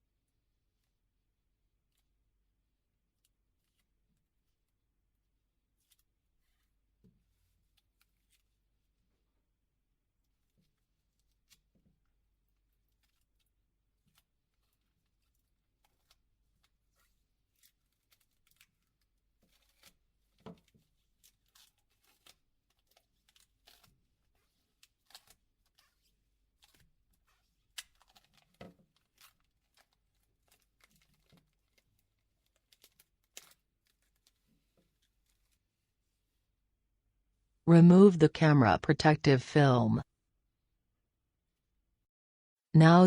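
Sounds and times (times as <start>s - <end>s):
plastic film being peeled off: 15.8s - 35.6s.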